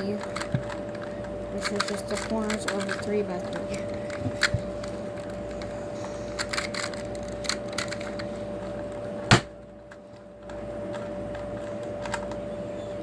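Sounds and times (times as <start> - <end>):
faint steady hum: 0.0 - 13.0
sharp knock: 9.3 - 9.5.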